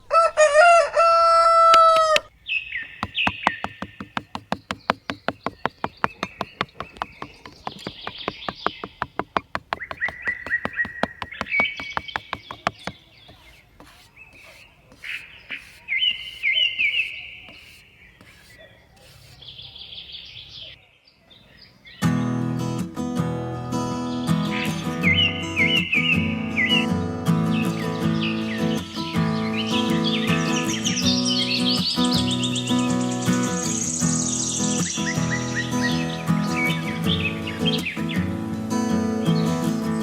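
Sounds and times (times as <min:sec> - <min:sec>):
rooster crowing: 0:00.0 - 0:02.3
small birds chirping: 0:02.0 - 0:20.8.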